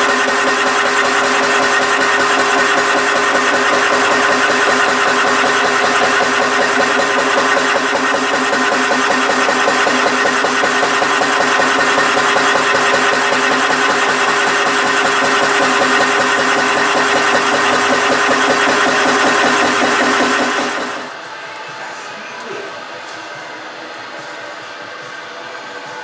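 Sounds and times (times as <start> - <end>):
engine running with fast pulse: 0.0 - 21.2.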